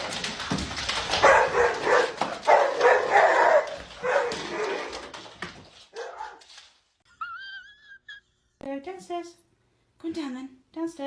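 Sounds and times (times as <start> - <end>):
dog barking: 1.2 - 5.0, 5.9 - 6.4.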